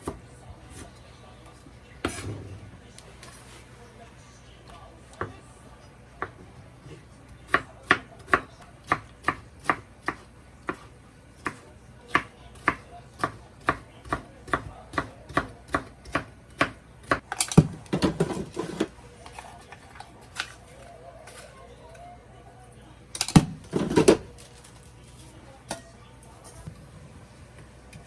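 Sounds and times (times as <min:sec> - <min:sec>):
knife chopping on cutting board: 0:06.2 - 0:18.9.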